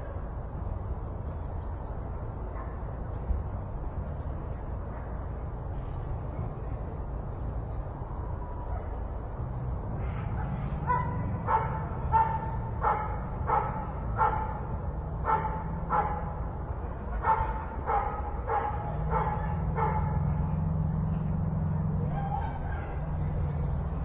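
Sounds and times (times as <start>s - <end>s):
dog barking: 10.0s - 16.4s, 17.2s - 20.6s, 22.0s - 23.3s.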